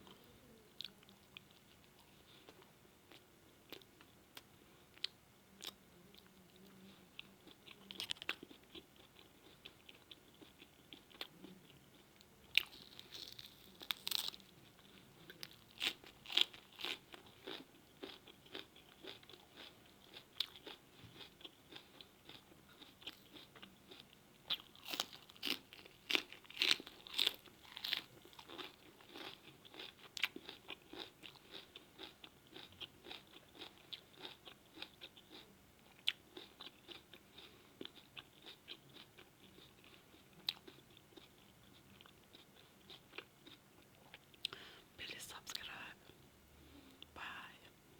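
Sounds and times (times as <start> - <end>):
person chewing food: 0.0 - 44.8
wet crunches and mouth clicks: 12.5 - 14.4.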